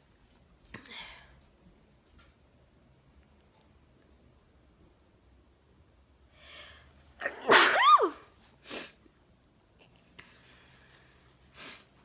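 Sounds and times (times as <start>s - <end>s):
woman sneezing: 7.2s - 8.8s.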